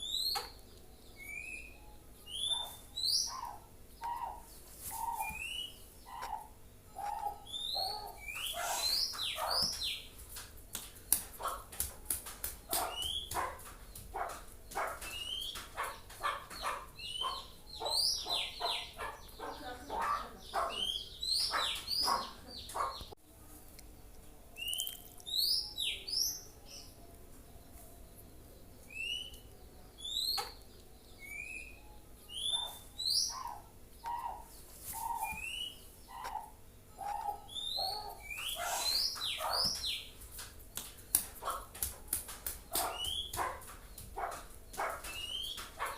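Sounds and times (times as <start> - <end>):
bird harsh chirps: 1.2 - 10.1, 24.6 - 26.9, 31.2 - 40.2, 42.7 - 45.9.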